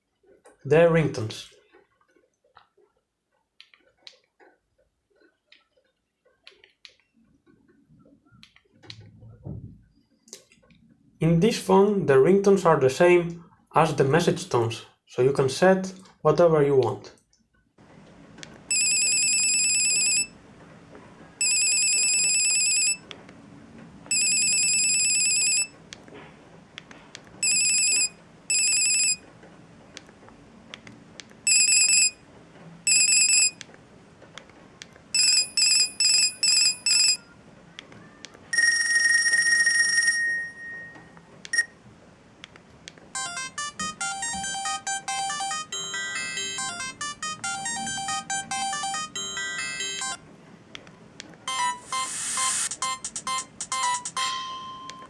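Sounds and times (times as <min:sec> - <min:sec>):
mobile phone ringtones: 0:18.7 - 0:20.3, 0:21.4 - 0:23.0, 0:24.1 - 0:25.7, 0:27.4 - 0:29.2, 0:31.5 - 0:32.2, 0:32.9 - 0:33.6, 0:35.2 - 0:37.3, 0:38.5 - 0:41.7, 0:43.2 - 0:50.2, 0:51.5 - 0:55.0
polyphonic ringtone melody: 0:18.7 - 0:20.3, 0:21.4 - 0:23.0, 0:24.1 - 0:25.7, 0:27.4 - 0:29.2, 0:31.5 - 0:32.2, 0:35.2 - 0:37.2, 0:43.2 - 0:50.2, 0:51.5 - 0:55.0.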